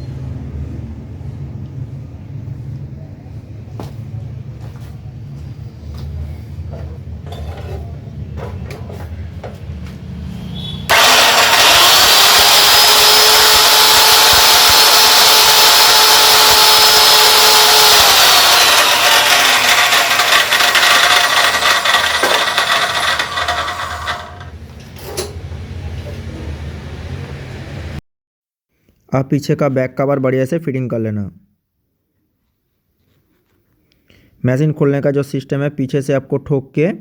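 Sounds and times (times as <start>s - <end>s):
cut-off saw motor whining: 10.9s - 24.5s.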